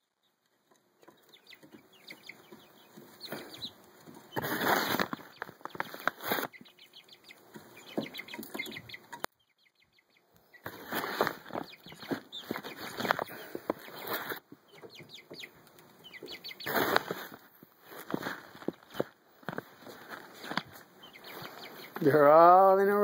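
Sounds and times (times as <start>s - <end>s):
chickens moving about: 0.2s - 23.0s
wings flapping: 3.0s - 9.0s, 10.6s - 14.4s, 16.1s - 22.0s.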